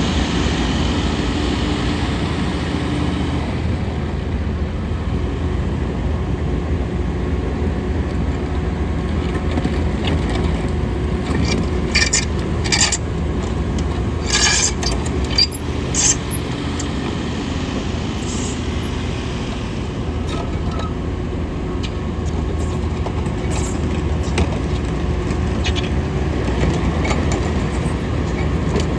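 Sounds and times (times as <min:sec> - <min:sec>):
diesel engine running: 0:00.0 - 0:28.9
metallic clanks and squeaks: 0:09.2 - 0:17.2, 0:20.2 - 0:28.9.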